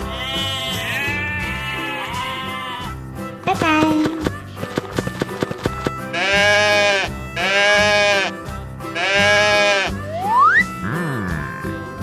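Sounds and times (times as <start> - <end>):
light background music: 0.0 - 12.0
sheep bleating: 5.9 - 8.4, 9.0 - 10.0
rising whistle: 9.9 - 11.0.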